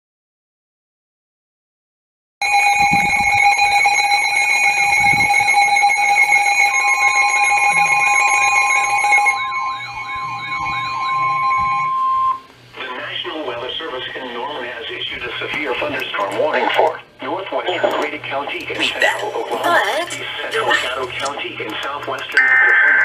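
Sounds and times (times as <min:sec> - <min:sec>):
steady electronic alert tones: 0:02.4 - 0:12.5
warbling siren-like tone: 0:02.4 - 0:12.5.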